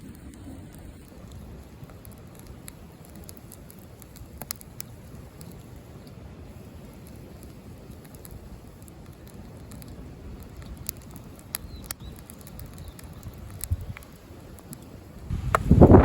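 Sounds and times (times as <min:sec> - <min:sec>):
campfire crackling: 0:00.0 - 0:16.0
wind rumble on microphone: 0:06.5 - 0:14.4, 0:15.0 - 0:16.0.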